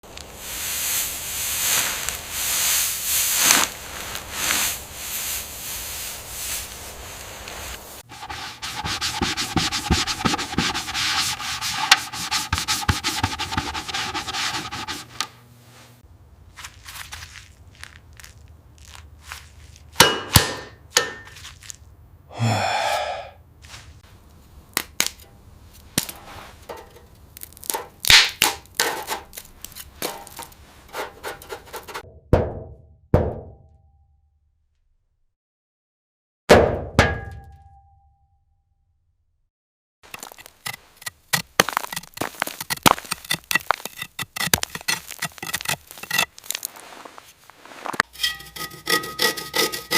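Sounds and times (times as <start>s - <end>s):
parts knocking and scraping: 8.0s - 15.4s, 25.8s - 32.0s, 40.1s - 49.9s.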